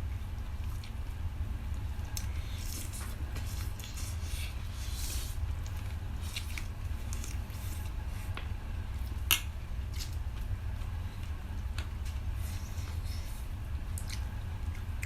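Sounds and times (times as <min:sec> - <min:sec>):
steady low hum: 0:00.0 - 0:15.0
wet chewing: 0:02.1 - 0:08.4, 0:12.0 - 0:15.0.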